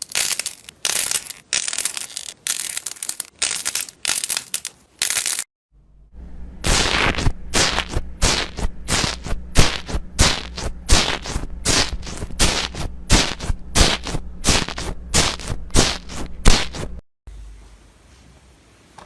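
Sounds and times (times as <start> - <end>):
steady low hum: 5.7 - 18.1.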